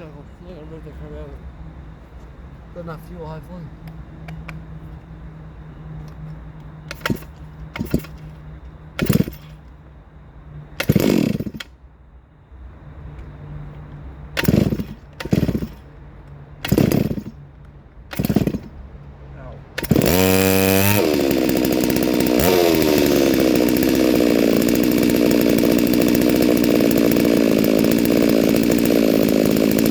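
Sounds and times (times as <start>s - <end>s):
steady low hum: 0.0s - 26.9s
chainsaw engine bursts: 6.9s - 9.7s, 10.8s - 11.8s, 14.4s - 15.9s, 16.6s - 17.4s, 18.1s - 18.8s, 19.8s - 29.9s.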